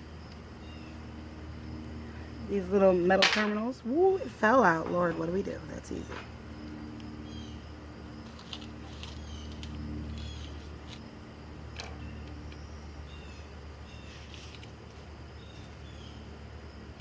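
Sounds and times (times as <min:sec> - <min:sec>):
low hum: 0:00.0 - 0:17.0
birds chirping: 0:09.0 - 0:10.6.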